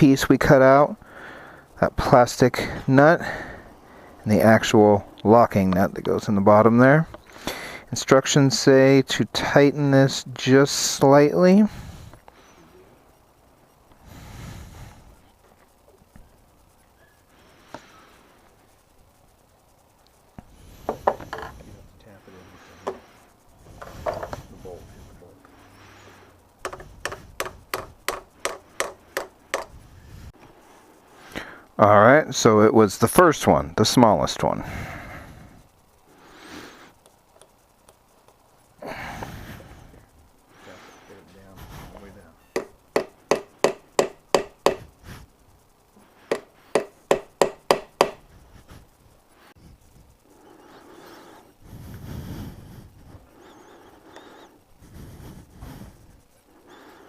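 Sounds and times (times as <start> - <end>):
tool tapping hard parts: 20.4 - 21.7, 22.8 - 23.1, 23.7 - 24.5, 26.6 - 29.8, 41.9 - 45.0, 46.3 - 48.3.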